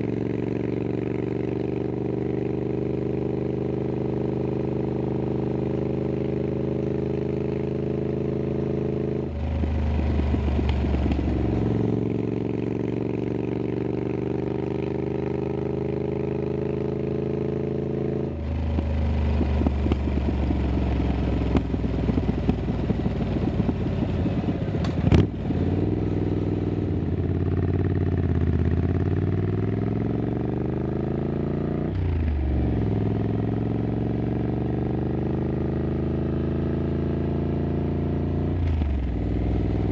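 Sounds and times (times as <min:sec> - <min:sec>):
motorcycle engine running: 0:00.0 - 0:39.9
exhaust crack: 0:18.8 - 0:20.6, 0:21.5 - 0:25.4.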